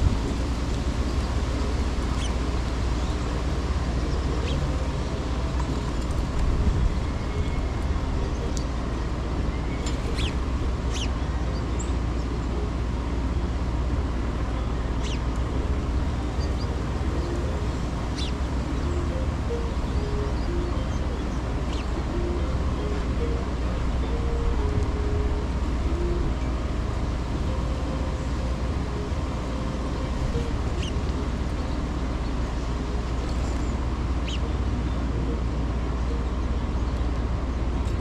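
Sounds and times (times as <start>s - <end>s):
wind rumbling on microphone: 0.0s - 12.1s
city traffic hum: 0.0s - 38.0s.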